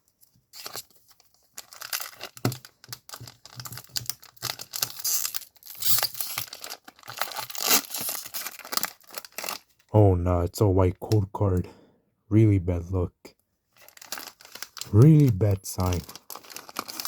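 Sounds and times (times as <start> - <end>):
card pack wrapper crinkling: 0.6 - 9.9, 13.8 - 17.0.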